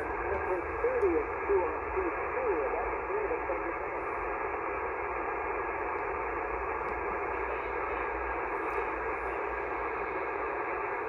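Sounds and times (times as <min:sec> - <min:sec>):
radio receiver hiss: 0:00.0 - 0:11.0.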